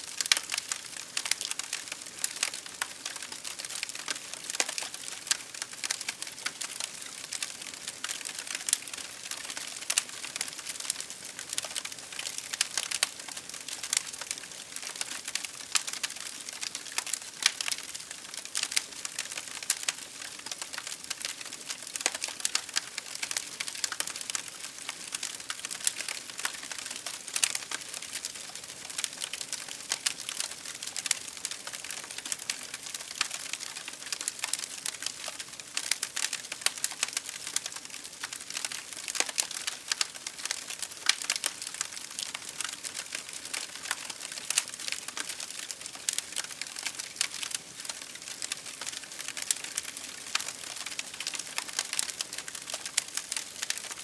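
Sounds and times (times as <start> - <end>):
campfire crackling: 0.1 - 54.0.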